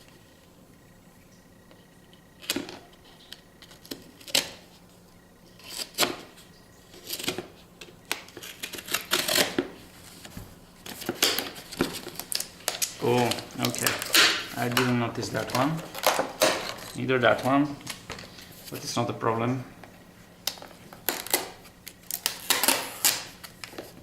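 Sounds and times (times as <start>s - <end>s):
plastic and cardboard packaging clicks: 2.4s - 4.6s, 7.0s - 18.8s, 20.4s - 24.0s.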